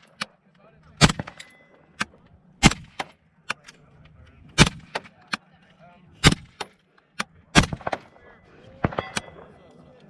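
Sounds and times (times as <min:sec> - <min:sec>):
rifle shots: 0:01.0 - 0:01.5, 0:02.6 - 0:03.2, 0:04.6 - 0:05.1, 0:06.2 - 0:06.7, 0:07.5 - 0:08.2, 0:08.8 - 0:09.5.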